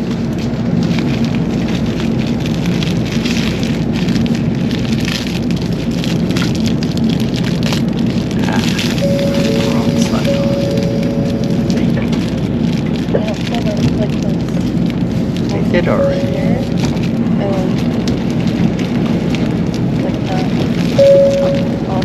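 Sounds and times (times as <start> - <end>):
low hum: 8.2 - 22.0
faint steady tones: 8.8 - 12.3, 15.6 - 17.0, 21.0 - 22.0.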